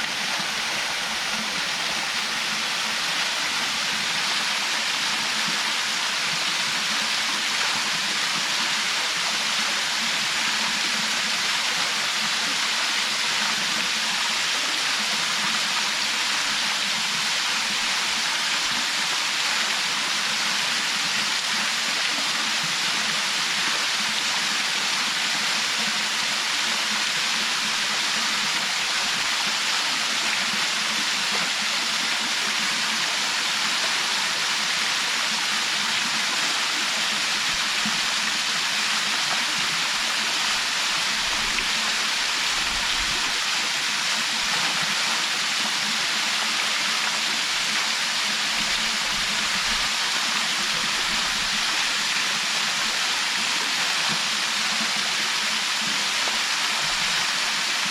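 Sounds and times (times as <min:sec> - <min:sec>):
waterfall rushing: 0:00.0 - 0:09.2, 0:28.7 - 0:57.9.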